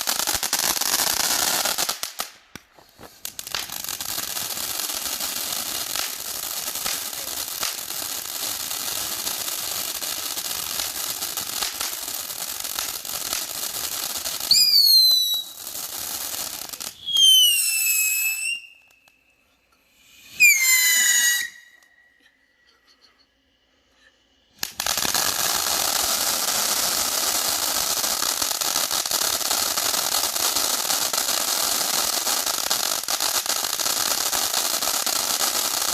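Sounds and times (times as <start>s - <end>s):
firework fountain hissing and crackling: 0.0s - 22.2s, 24.1s - 35.9s
firework whistles falling in pitch: 14.3s - 15.7s, 16.8s - 19.4s, 20.0s - 22.2s.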